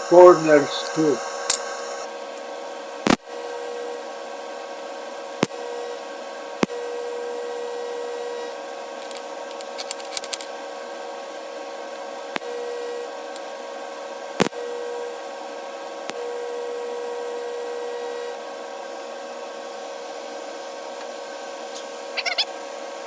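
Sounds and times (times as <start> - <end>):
sharp clicks: 0.0 - 2.1
welder humming: 0.0 - 2.1.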